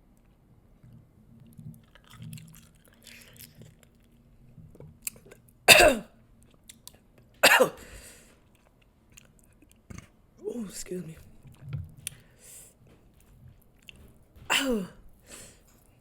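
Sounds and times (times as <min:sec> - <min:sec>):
chewing and mouth noises: 0:00.2 - 0:05.6, 0:06.4 - 0:07.4, 0:08.3 - 0:10.2, 0:11.2 - 0:14.5
woman coughing: 0:05.7 - 0:06.1, 0:07.4 - 0:07.8, 0:14.5 - 0:15.0.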